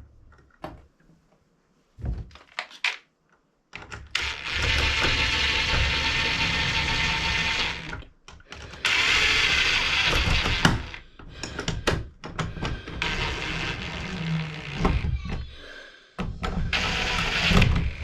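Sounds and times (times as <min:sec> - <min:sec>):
cordless drill driving screws: 0:04.2 - 0:08.0, 0:08.6 - 0:11.0, 0:12.4 - 0:15.2, 0:16.6 - 0:18.0.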